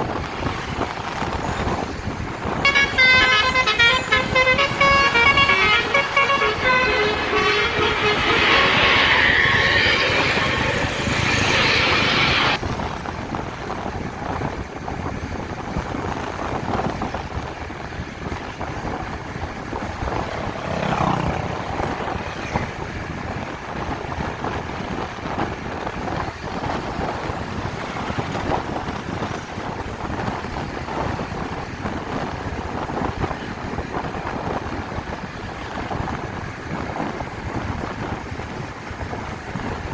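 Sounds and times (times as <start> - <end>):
road traffic noise: 0.0 - 39.9
loud rushing noise: 1.8 - 13.4, 18.2 - 25.0
bus musical horn: 2.4 - 12.6, 19.8 - 22.8.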